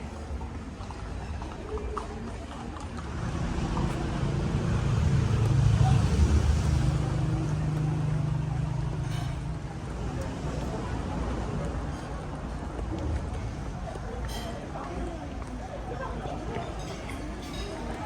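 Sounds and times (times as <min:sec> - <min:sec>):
street traffic noise: 0:00.0 - 0:18.0
vehicle engine humming: 0:02.9 - 0:14.2.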